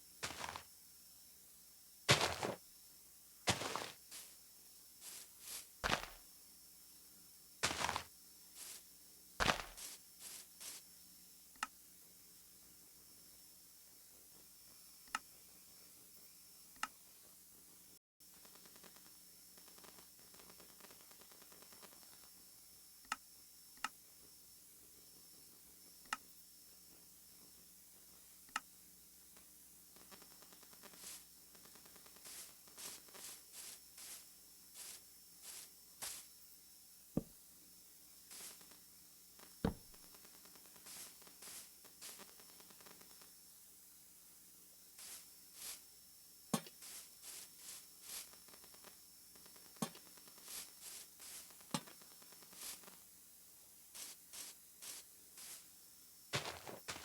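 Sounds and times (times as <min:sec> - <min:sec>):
faint steady hiss: 0:00.0 - 0:57.0
dull thuds: 0:02.1 - 0:02.6, 0:05.1 - 0:06.2, 0:09.4 - 0:10.0, 0:39.6 - 0:40.0
faint small clicks: 0:11.5 - 0:11.8, 0:15.0 - 0:15.3, 0:16.8 - 0:17.0, 0:23.0 - 0:23.2, 0:23.8 - 0:24.0, 0:26.0 - 0:26.3, 0:28.5 - 0:28.7.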